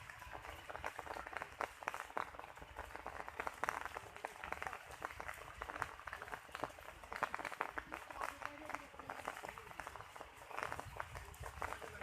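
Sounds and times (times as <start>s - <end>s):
water splashing and pattering: 0.0s - 12.0s.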